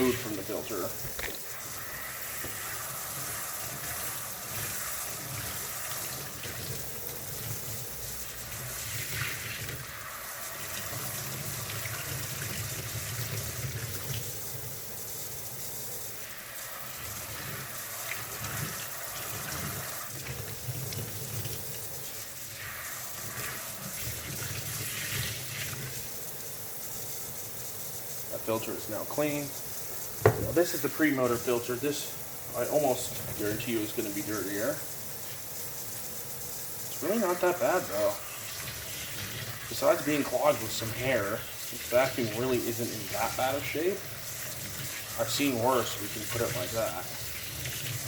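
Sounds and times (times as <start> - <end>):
tap water splashing on foam filter: 1.1 - 7.7, 30.2 - 30.8.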